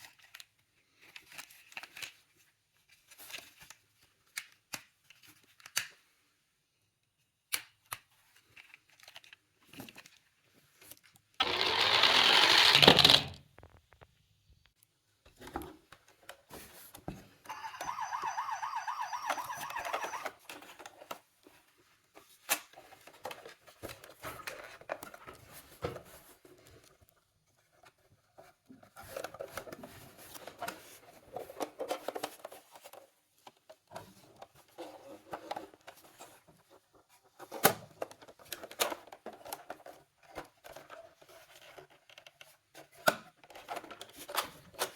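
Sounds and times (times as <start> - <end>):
toy cars clicking and knocking: 11.4 - 13.7, 17.5 - 21.0
toy electronic siren warbling: 17.5 - 20.4.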